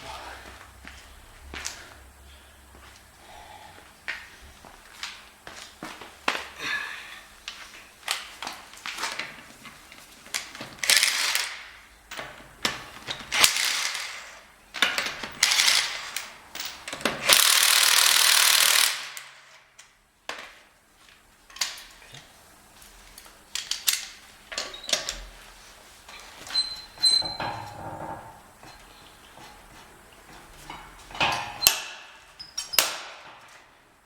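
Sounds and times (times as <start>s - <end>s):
ratchet clicking: 10.8s - 11.6s, 13.4s - 14.4s, 17.3s - 19.5s.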